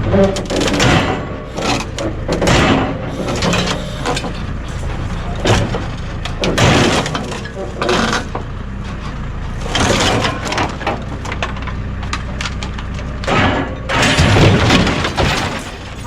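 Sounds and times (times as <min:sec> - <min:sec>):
knocks and cracks: 0:00.0 - 0:09.1, 0:09.7 - 0:16.0.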